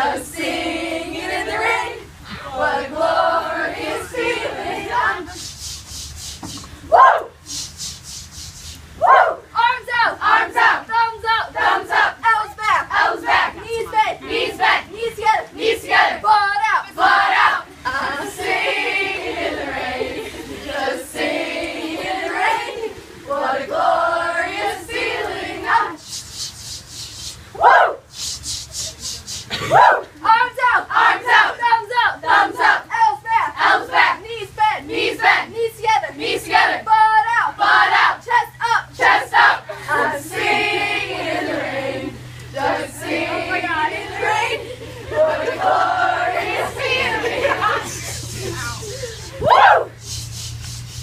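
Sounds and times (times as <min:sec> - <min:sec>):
group singing: 0:00.0 - 0:05.4, 0:12.8 - 0:13.6, 0:15.5 - 0:16.3, 0:16.9 - 0:26.0, 0:30.8 - 0:37.0, 0:37.6 - 0:48.3
rhythmic breathy hissing: 0:03.2 - 0:09.0, 0:25.9 - 0:29.6, 0:47.7 - 0:51.0
short rising shout: 0:27.6 - 0:28.0, 0:48.4 - 0:50.1.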